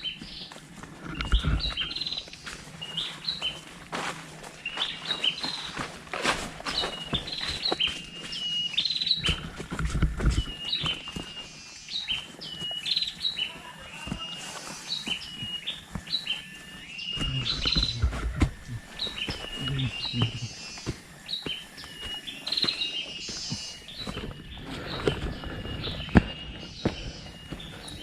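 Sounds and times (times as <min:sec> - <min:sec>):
bird whistling calls: 0:10.2 - 0:28.0.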